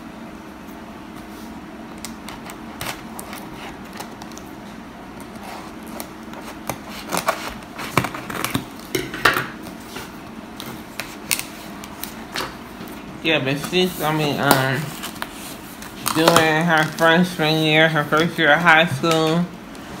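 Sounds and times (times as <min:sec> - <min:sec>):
steady low hum: 0:00.0 - 0:20.0
items clicking and clattering: 0:05.2 - 0:17.2, 0:18.1 - 0:19.5.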